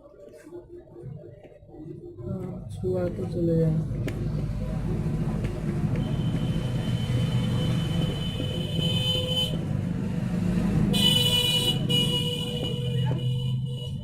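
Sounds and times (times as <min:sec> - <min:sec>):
road traffic rumbling: 0:01.3 - 0:14.0
vehicle horn: 0:06.0 - 0:09.7, 0:10.9 - 0:14.0
loud horn blast: 0:06.0 - 0:09.8, 0:10.8 - 0:14.0.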